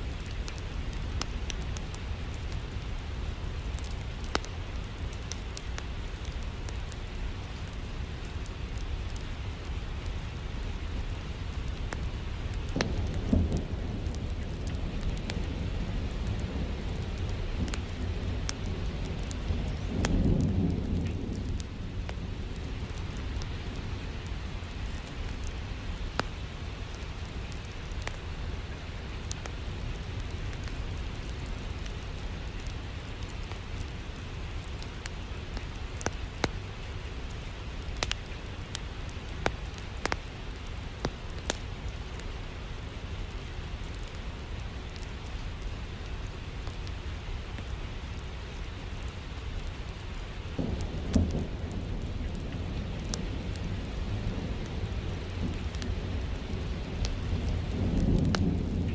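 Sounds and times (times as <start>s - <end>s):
steady rain: 0.0s - 58.9s
wood fire crackling: 0.0s - 58.9s
low rumble of thunder: 6.1s - 33.3s, 50.6s - 58.9s.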